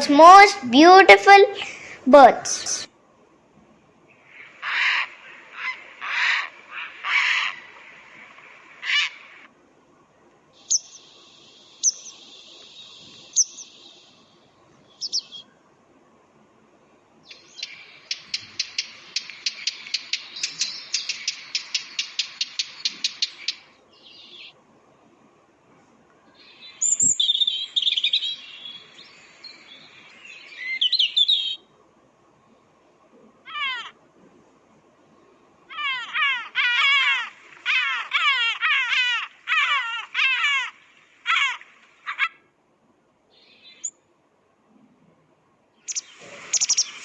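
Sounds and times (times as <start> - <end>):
bird twittering song: 10.6 - 15.6, 17.2 - 24.6, 26.3 - 31.6, 43.4 - 44.0, 45.8 - 47.0.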